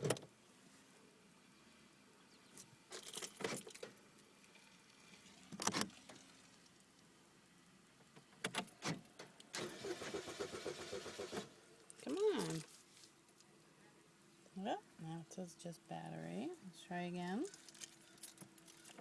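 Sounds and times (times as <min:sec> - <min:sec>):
car keys jangling: 0:02.9 - 0:03.9, 0:17.5 - 0:19.0.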